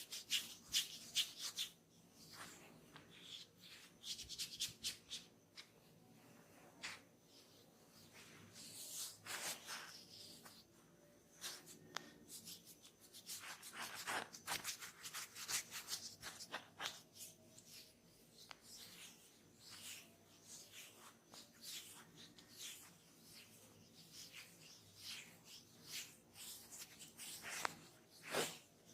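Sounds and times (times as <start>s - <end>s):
hands rubbing skin and hair: 0.0s - 5.8s, 6.8s - 10.7s, 11.3s - 28.9s.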